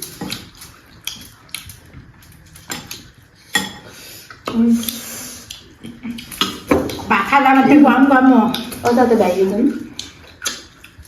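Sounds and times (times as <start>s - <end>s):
plates and utensils clinking: 2.6s - 4.6s.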